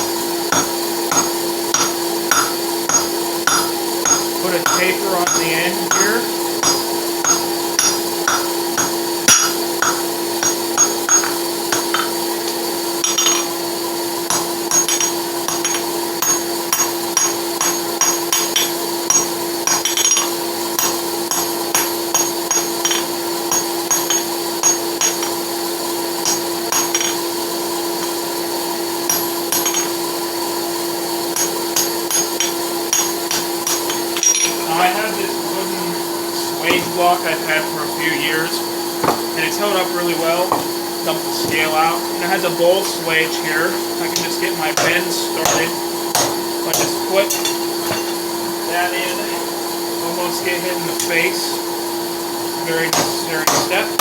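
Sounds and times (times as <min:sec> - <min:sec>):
forge blower hum: 0:00.0 - 0:54.0
hammer striking horseshoe on anvil: 0:00.5 - 0:13.6, 0:14.3 - 0:25.4, 0:26.2 - 0:27.2, 0:29.0 - 0:30.0, 0:31.3 - 0:35.2, 0:39.0 - 0:39.7, 0:40.4 - 0:40.8, 0:44.2 - 0:48.3, 0:52.9 - 0:54.0.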